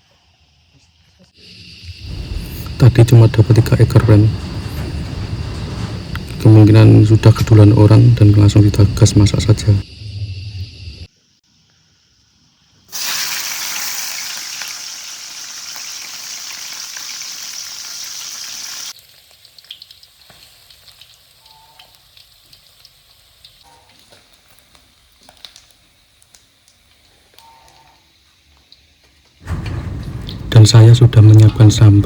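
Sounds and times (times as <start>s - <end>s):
fish sizzling in hot oil: 12.9s - 27.4s
oil crackling and popping: 12.9s - 29.4s.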